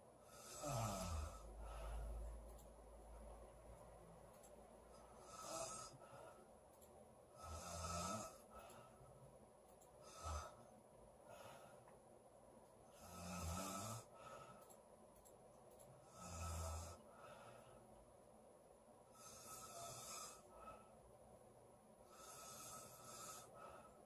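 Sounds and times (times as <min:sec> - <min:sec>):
girl snoring: 0:00.3 - 0:01.5, 0:05.2 - 0:06.0, 0:07.4 - 0:08.4, 0:13.0 - 0:14.1, 0:16.1 - 0:17.0, 0:19.2 - 0:20.4.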